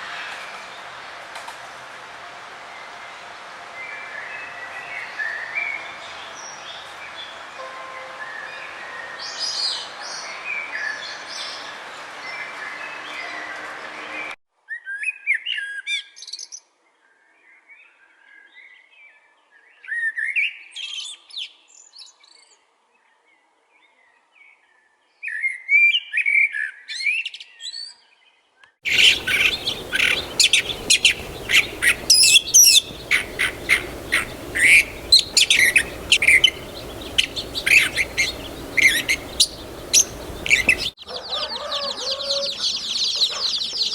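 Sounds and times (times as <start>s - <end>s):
faint hum: 28.9s - 41.0s
birds chirping: 28.9s - 43.9s.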